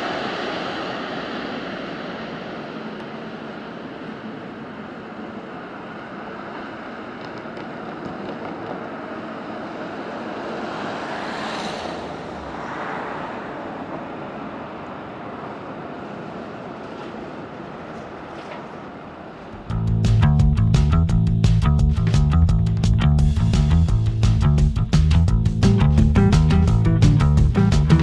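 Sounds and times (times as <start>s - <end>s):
jet engines roaring: 0.0s - 19.8s.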